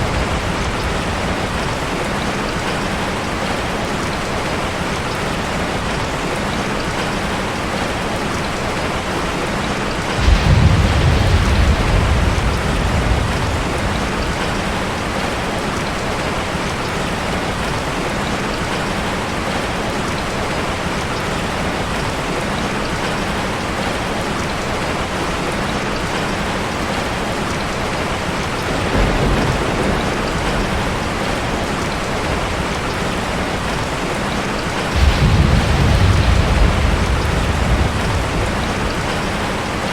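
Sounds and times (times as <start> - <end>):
low thunder rolls: 0.0 - 3.0, 10.0 - 16.6, 27.9 - 39.9
heavy rain falling: 0.0 - 39.9.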